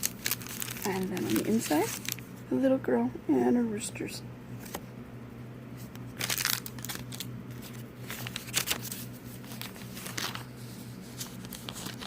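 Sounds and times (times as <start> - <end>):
paper rustling: 0.0 - 2.3, 5.8 - 12.0.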